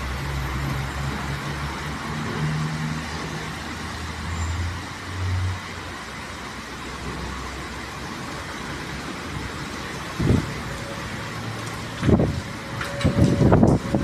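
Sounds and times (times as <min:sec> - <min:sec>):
heavy rain pouring: 0:00.0 - 0:14.0
strong wind: 0:09.3 - 0:14.0.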